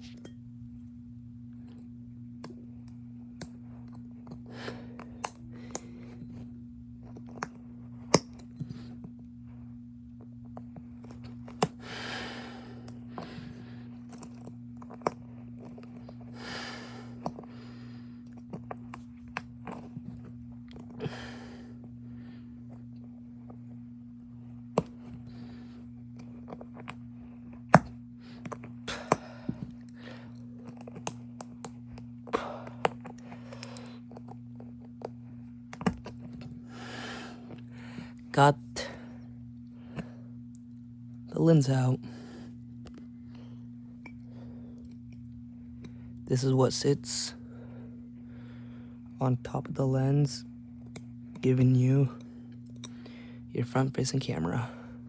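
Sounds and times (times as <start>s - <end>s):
tools clicking and snapping: 4.3s - 6.2s, 14.1s - 16.0s, 30.6s - 35.1s.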